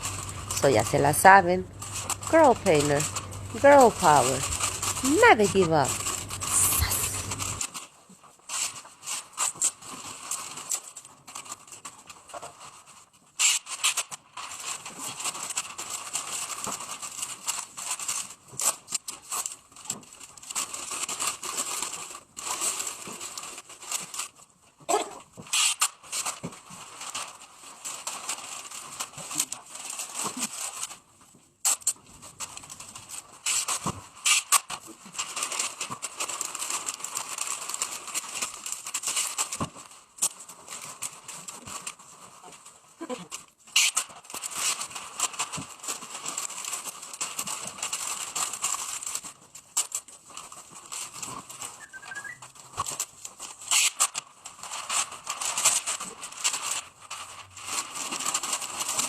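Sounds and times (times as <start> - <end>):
plastic sheet rustling and crackling: 0.0 - 59.0.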